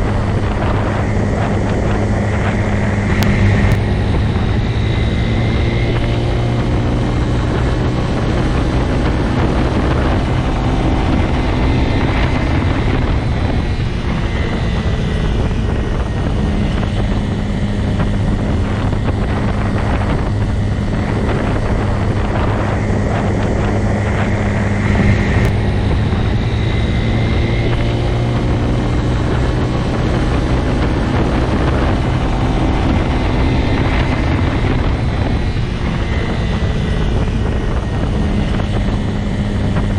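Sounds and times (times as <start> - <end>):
motorcycle engine running: 0.0 - 39.9.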